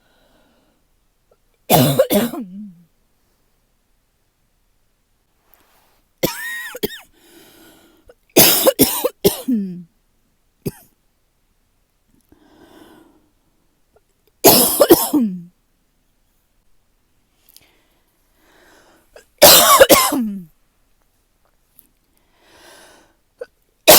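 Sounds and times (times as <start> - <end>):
person coughing: 1.7 - 2.8, 6.2 - 7.1, 8.4 - 9.8, 10.6 - 10.9, 14.4 - 15.5, 19.2 - 20.5, 23.4 - 23.9.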